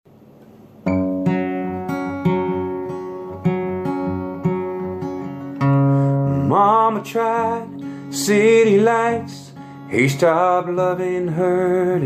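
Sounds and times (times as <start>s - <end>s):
acoustic guitar chords: 0.4s - 12.0s.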